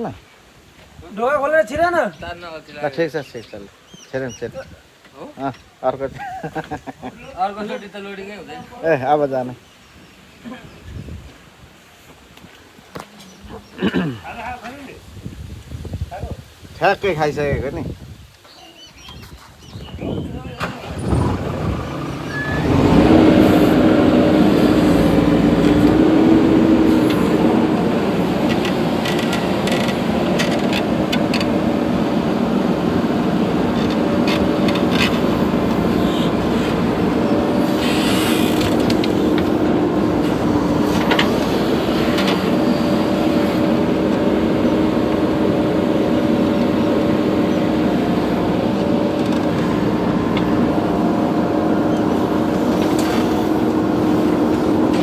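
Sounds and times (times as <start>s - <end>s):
heavy diesel engine revving: 20.6s - 55.0s.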